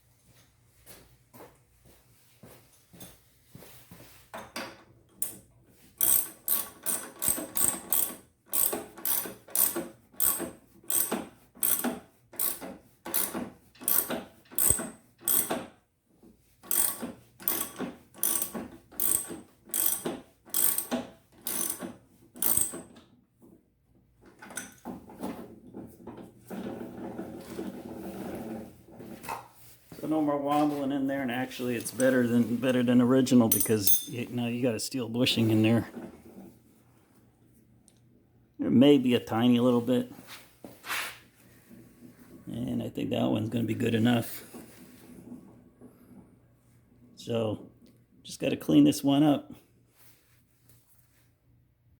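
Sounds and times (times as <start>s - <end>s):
ratcheting clicks: 6.0s - 15.6s, 16.7s - 22.8s.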